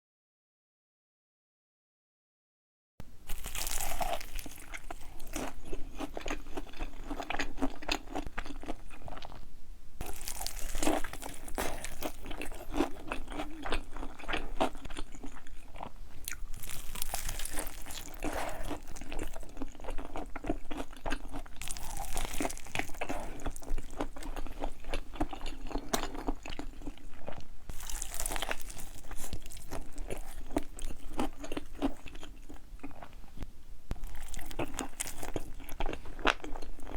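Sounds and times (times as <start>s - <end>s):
crunching bite: 3.3s - 9.3s, 10.0s - 26.6s, 27.7s - 33.1s
chewing: 3.3s - 9.4s, 10.0s - 33.2s, 33.9s - 36.9s.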